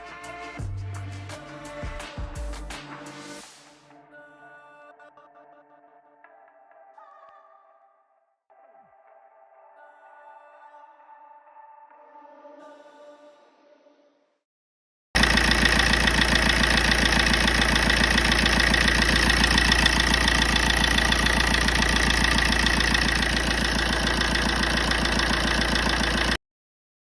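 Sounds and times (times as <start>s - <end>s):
diesel engine idling with clatter: 15.2s - 26.4s.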